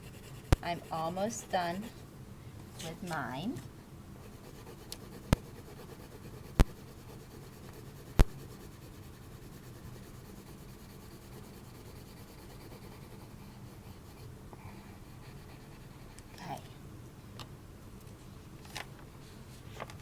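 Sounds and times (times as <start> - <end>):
crayon rubbing on paper: 0.0 - 2.0, 4.3 - 14.3.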